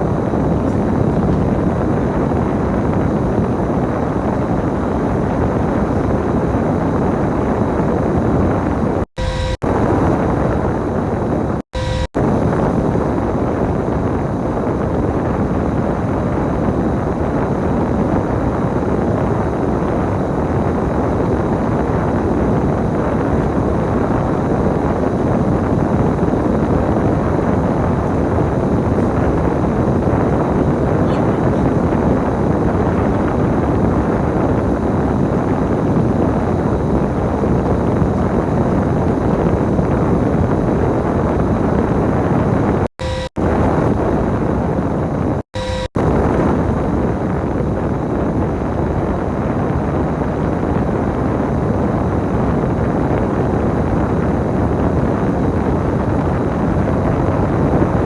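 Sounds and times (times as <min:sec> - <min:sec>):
bus engine and road rumble: 0:28.0 - 0:32.2.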